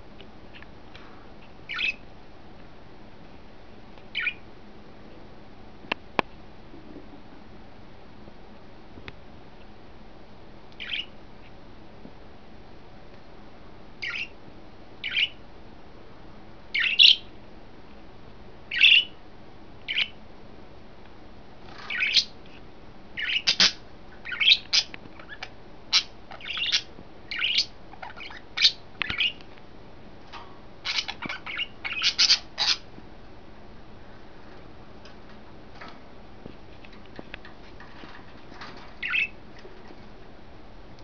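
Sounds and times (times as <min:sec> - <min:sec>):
budgerigars calling: 0:14.0 - 0:14.3, 0:16.8 - 0:17.2, 0:21.9 - 0:22.3, 0:23.2 - 0:29.4, 0:30.8 - 0:32.9, 0:39.0 - 0:39.4.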